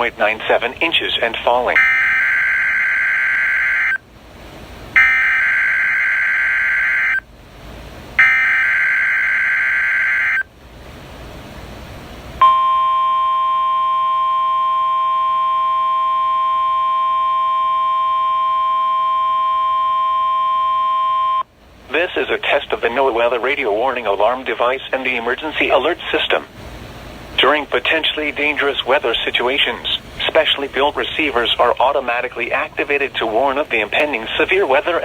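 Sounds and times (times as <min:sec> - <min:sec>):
steady alarm tone: 0:01.7 - 0:04.0, 0:05.0 - 0:07.3, 0:08.2 - 0:10.5, 0:12.4 - 0:21.4.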